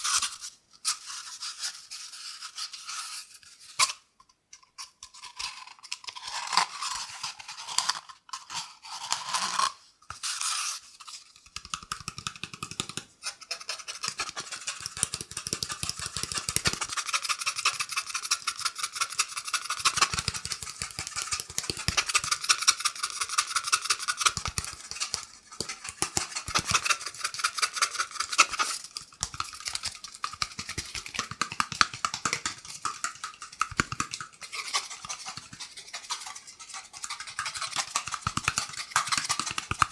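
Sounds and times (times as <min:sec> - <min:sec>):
fingernails scratching cardboard tube: 0:12.4 - 0:39.9.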